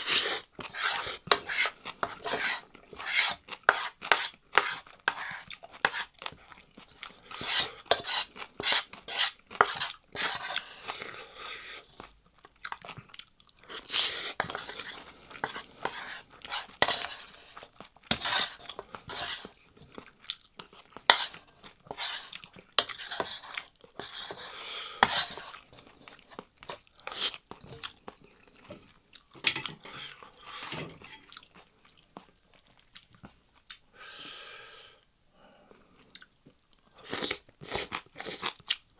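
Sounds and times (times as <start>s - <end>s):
chewing and crunching: 11.9s - 14.0s, 17.6s - 22.8s, 25.5s - 30.3s, 31.0s - 33.8s.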